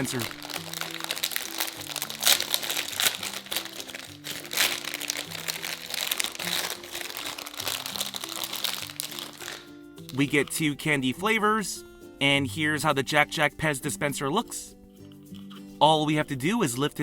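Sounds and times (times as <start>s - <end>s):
plastic packaging crinkling: 0.0s - 10.5s
upbeat background music: 0.0s - 17.0s.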